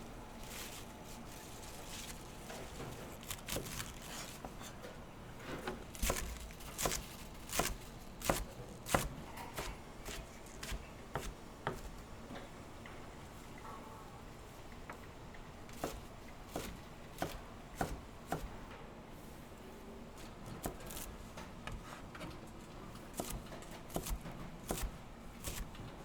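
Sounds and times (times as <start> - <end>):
knife chopping on cutting board: 6.0 - 11.9, 15.8 - 18.6, 23.1 - 25.7.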